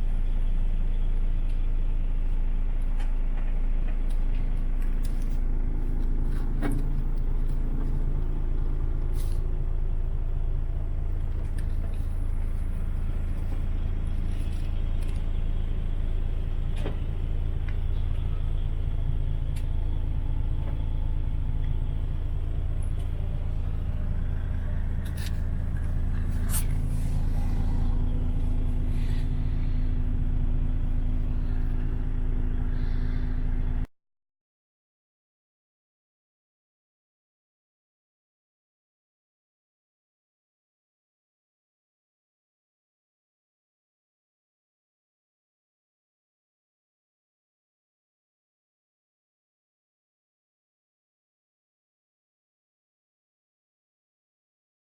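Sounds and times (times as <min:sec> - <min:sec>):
diesel engine idling: 0:00.0 - 0:33.9.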